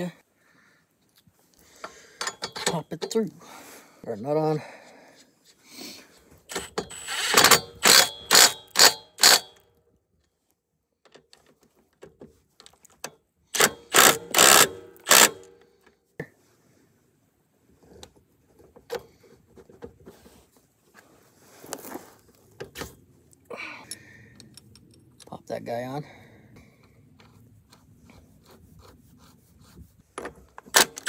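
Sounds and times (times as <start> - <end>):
ratchet wrench clicking: 6.5 - 9.6, 13.6 - 15.5.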